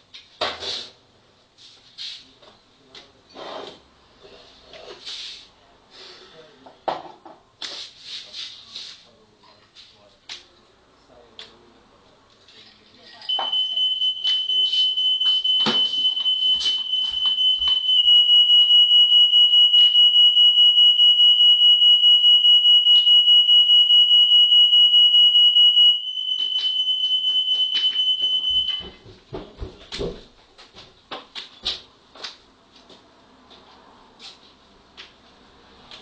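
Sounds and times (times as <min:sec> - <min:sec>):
smoke alarm tone: 0:13.3 - 0:29.0.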